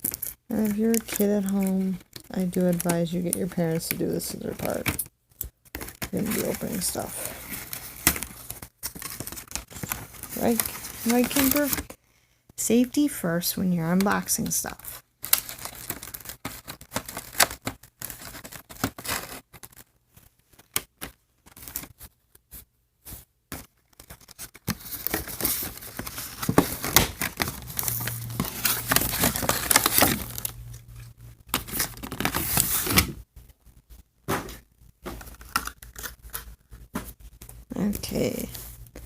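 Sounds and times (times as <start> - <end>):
packaging being torn and crinkled: 0.0 - 11.9, 14.7 - 22.0, 23.6 - 33.1, 35.2 - 37.6.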